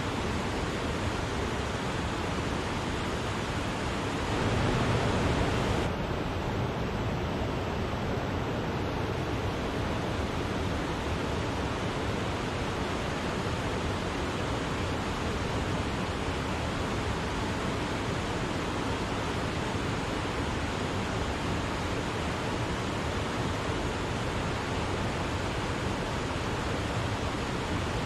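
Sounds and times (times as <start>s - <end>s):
waterfall rushing: 0.0s - 6.0s.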